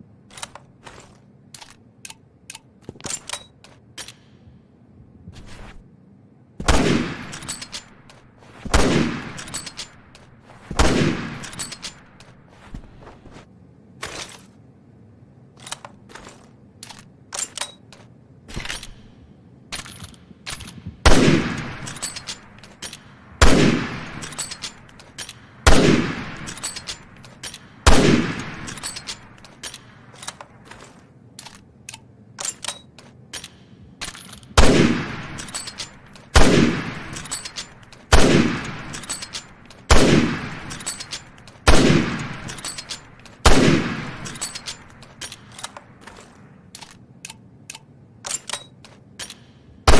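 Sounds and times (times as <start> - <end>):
sharp rifle bolt clicks: 1.5 - 4.4, 16.8 - 19.2, 19.8 - 49.9
rifle shots with echo: 6.6 - 7.6, 8.7 - 9.6, 10.7 - 11.8, 20.5 - 22.6, 23.4 - 24.8, 25.6 - 27.2, 27.8 - 29.4, 34.6 - 45.1.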